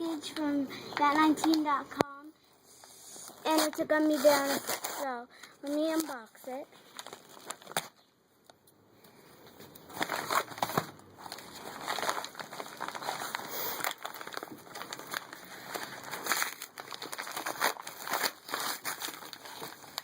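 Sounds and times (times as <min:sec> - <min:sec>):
packaging crinkling: 0:03.5 - 0:08.0, 0:09.6 - 0:20.0.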